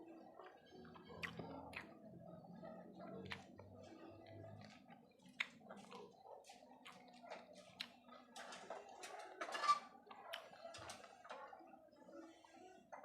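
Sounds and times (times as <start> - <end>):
chewing and wet mouth clicks: 0.4 - 2.4, 3.0 - 8.3, 10.1 - 11.1.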